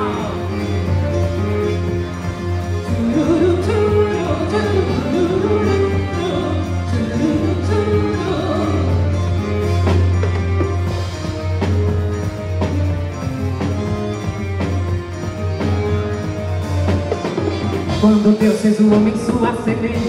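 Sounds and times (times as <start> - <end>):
person singing: 0.0 - 2.2, 2.8 - 9.8, 17.7 - 20.0.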